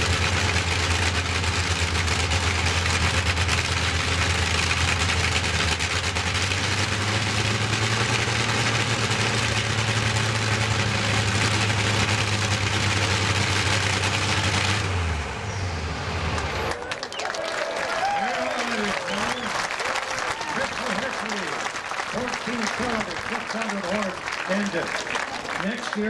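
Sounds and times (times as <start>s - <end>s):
radial aero engine idling: 0.0s - 15.6s.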